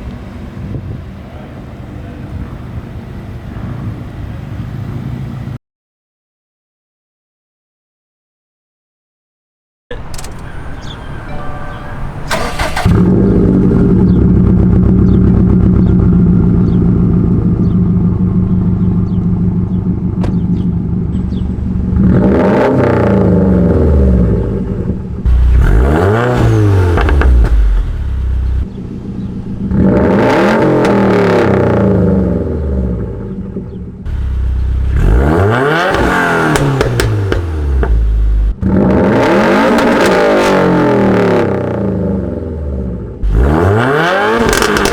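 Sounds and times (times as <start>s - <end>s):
car engine idling: 9.9s - 38.6s
car engine revving: 9.9s - 44.9s
car engine starting: 9.9s - 44.9s.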